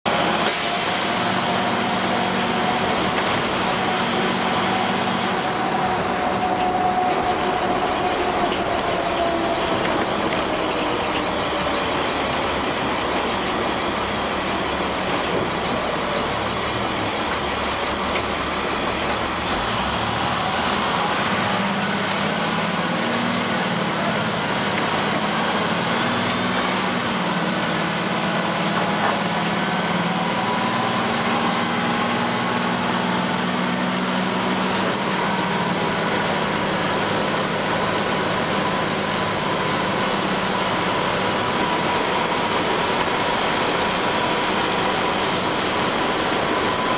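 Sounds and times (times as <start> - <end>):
road and engine noise: 0.0 - 46.9.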